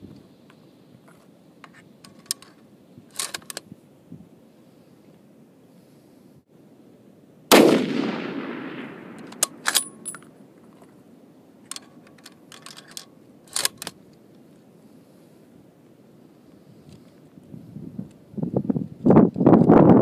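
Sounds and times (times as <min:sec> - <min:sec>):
rifle bolt metallic clicks: 0:01.6 - 0:03.7, 0:07.5 - 0:11.0, 0:11.6 - 0:14.2
rifle shot echoing: 0:07.5 - 0:10.3.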